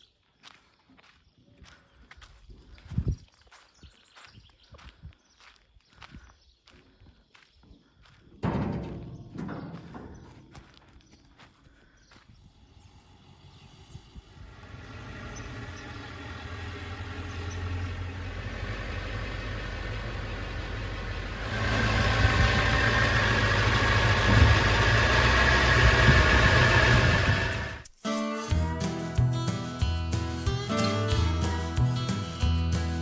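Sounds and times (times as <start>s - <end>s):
truck engine rumbling: 8.3s - 27.9s.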